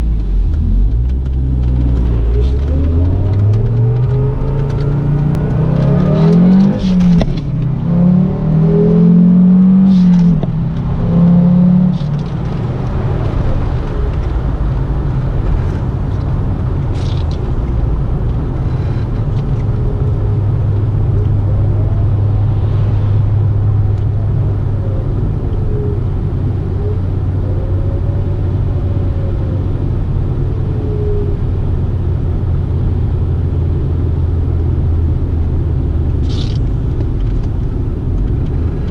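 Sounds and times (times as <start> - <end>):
car engine revving: 0.0 - 27.3.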